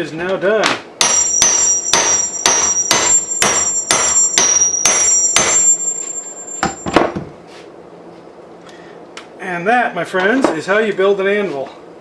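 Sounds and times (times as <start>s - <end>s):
hammer striking steel anvil: 1.0s - 7.2s
knock cutting off ringing: 1.0s - 7.3s.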